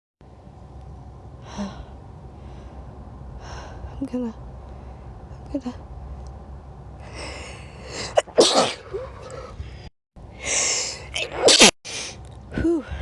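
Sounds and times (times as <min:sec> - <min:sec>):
breathy in-breath: 0:07.0 - 0:08.2
person sneezing: 0:08.1 - 0:08.8, 0:11.2 - 0:11.8.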